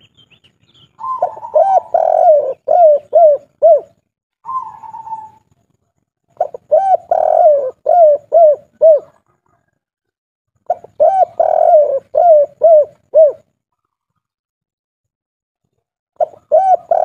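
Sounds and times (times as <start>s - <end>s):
dove cooing: 1.0s - 5.5s, 6.4s - 9.7s, 10.7s - 13.5s, 16.2s - 17.0s.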